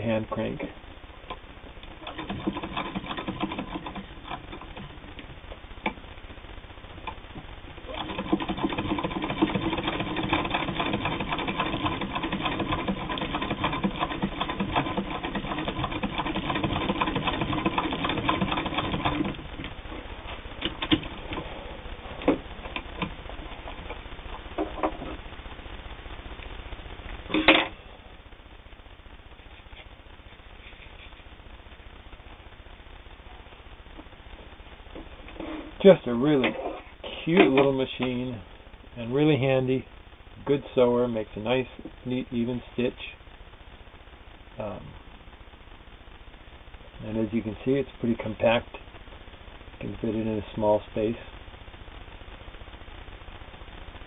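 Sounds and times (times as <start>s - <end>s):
sewing machine chatter: 2.0s - 4.8s, 7.8s - 19.4s.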